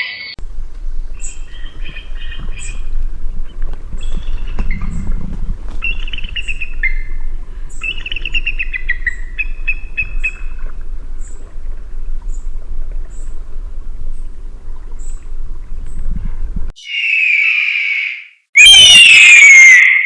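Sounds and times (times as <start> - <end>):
eagle calling: 16.8 - 20.0.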